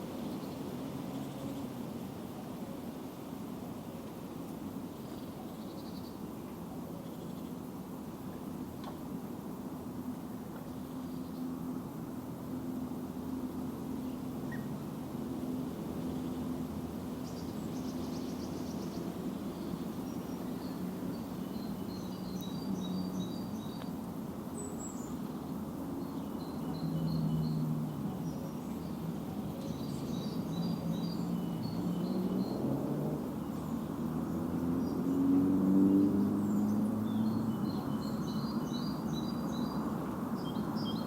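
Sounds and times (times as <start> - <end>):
songbirds chirping: 0.0 - 41.0.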